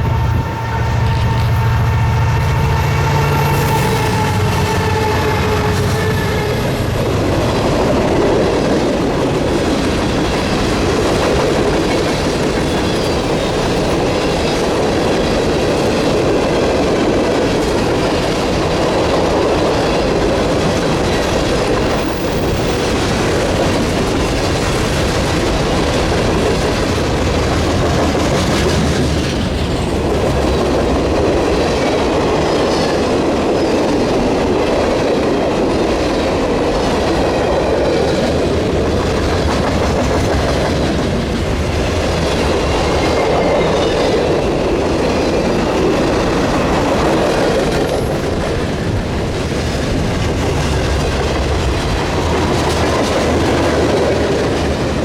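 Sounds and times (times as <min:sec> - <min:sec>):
freight train cars rumbling past: 0:00.0 - 0:55.0.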